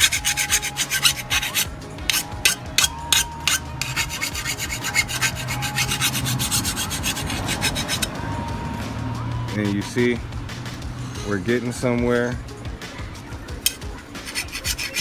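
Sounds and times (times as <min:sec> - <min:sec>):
file rasping on steel blade: 0:00.0 - 0:08.1, 0:09.5 - 0:10.1, 0:11.0 - 0:11.6, 0:13.6 - 0:15.0.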